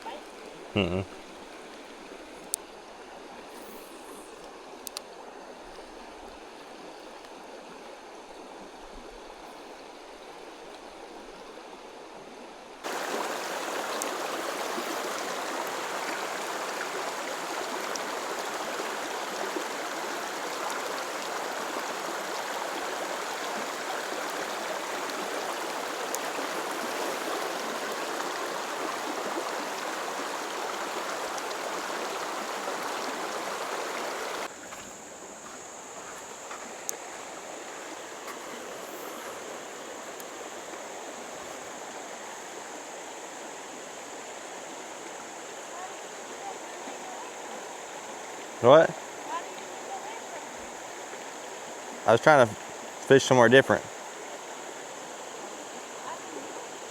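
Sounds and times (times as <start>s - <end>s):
creek water over rocks: 0.0s - 56.9s
faint clicks: 3.6s - 5.8s.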